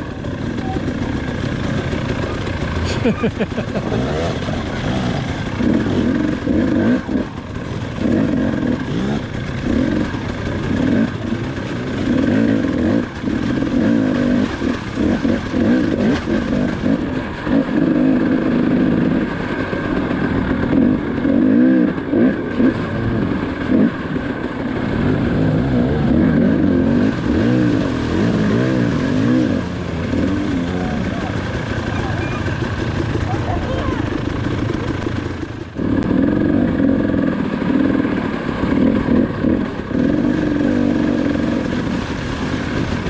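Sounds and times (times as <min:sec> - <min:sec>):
two-stroke dirt bike revving: 0:00.0 - 0:43.0.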